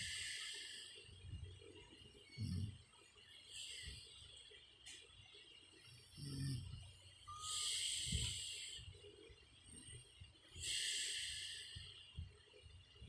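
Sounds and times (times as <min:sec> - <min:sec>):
woman breathing heavily: 0:00.0 - 0:01.5, 0:03.6 - 0:04.3, 0:07.3 - 0:09.0, 0:10.5 - 0:12.4
woman snoring: 0:06.2 - 0:06.7.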